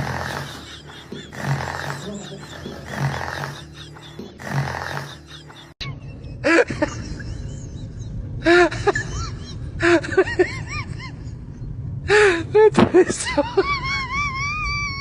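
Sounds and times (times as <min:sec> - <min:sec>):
breathy snore: 0:00.0 - 0:05.8.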